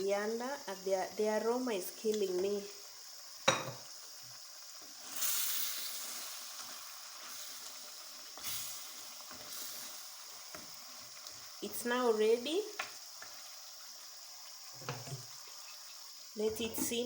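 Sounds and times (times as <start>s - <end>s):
stew sizzling in a pot: 0.0s - 17.0s.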